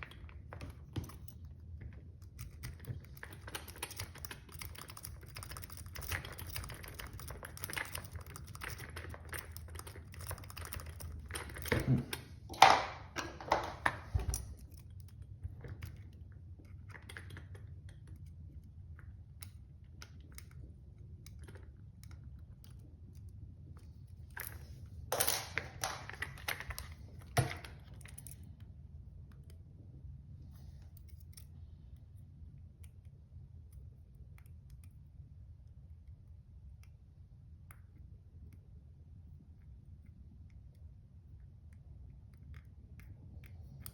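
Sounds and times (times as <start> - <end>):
lock picks clicking and scraping: 0.0 - 18.7, 19.3 - 28.7.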